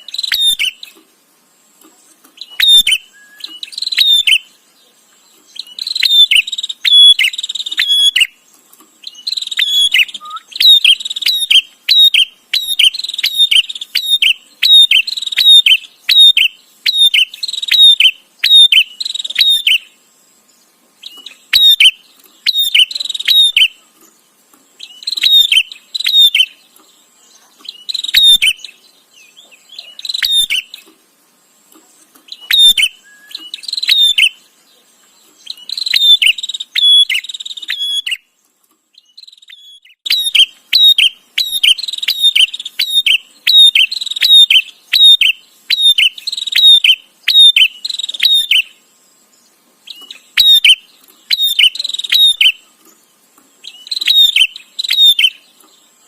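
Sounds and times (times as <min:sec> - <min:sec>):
bird chattering: 0:02.3 - 0:04.5, 0:05.5 - 0:08.4, 0:09.0 - 0:19.9, 0:21.0 - 0:24.0, 0:24.8 - 0:26.6, 0:27.3 - 0:30.9, 0:32.3 - 0:34.4, 0:39.2 - 0:48.7, 0:49.9 - 0:52.7, 0:53.6 - 0:55.7.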